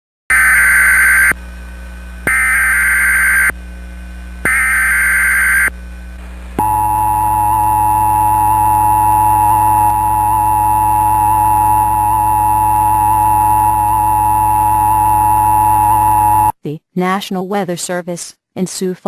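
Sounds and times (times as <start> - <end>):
buzzing data tones: 0.3 - 1.4, 2.2 - 3.6, 4.4 - 5.8, 6.6 - 16.6
two-tone attention signal: 6.6 - 16.5.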